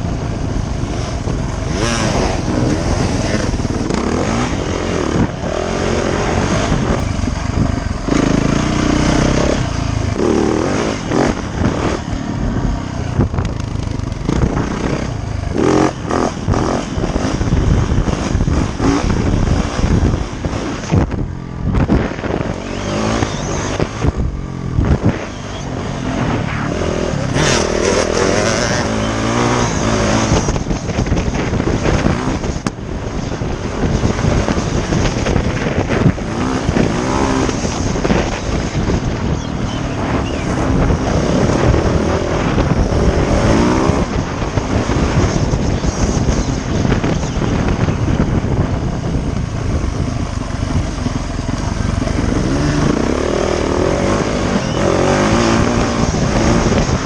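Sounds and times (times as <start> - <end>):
dirt bike engine revving: 0.0 - 57.0
wind noise on microphone: 0.0 - 57.0.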